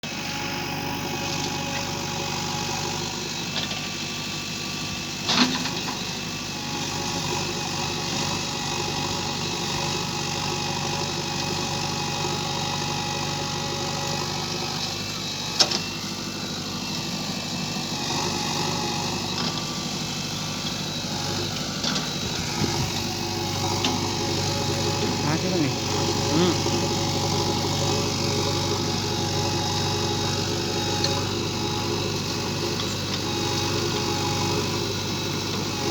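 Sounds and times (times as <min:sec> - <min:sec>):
excavator diesel engine running: 0:00.0 - 0:35.9.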